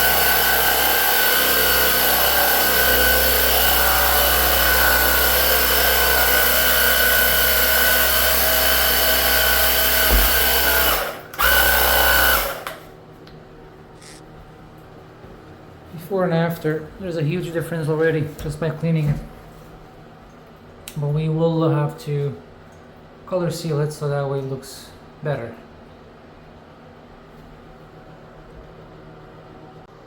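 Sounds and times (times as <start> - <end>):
electric motor whining: 0.0 - 12.7.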